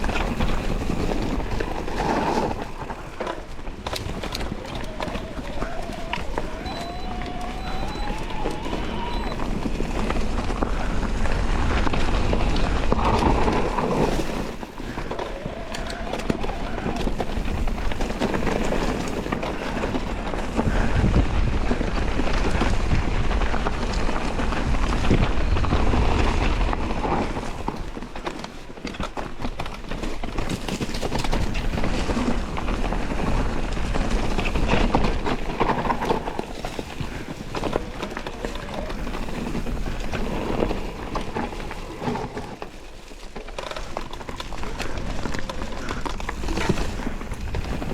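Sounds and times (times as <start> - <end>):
bike rattling: 0.0 - 47.9
tyres rolling over dirt and rocks: 0.0 - 47.9
wind rushing over microphone: 4.0 - 27.8.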